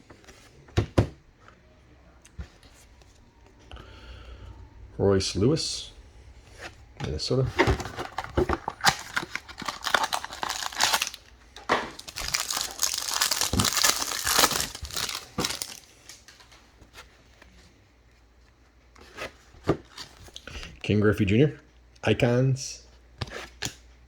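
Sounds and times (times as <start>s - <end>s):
wrapper tearing and crinkling: 8.0s - 11.3s, 11.9s - 16.5s.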